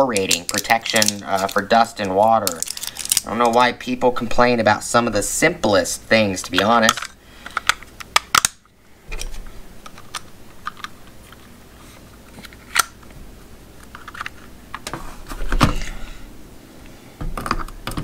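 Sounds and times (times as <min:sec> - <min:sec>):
clicks of small plastic parts: 0:06.4 - 0:08.6.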